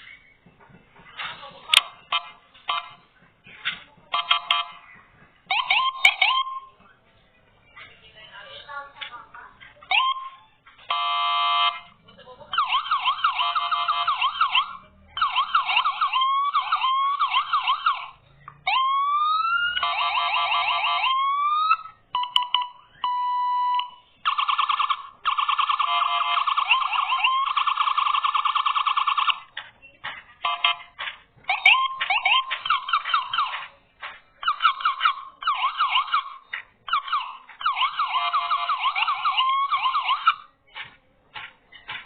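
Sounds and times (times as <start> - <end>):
electronic siren cycling tones: 12.6 - 29.6, 34.4 - 40.5.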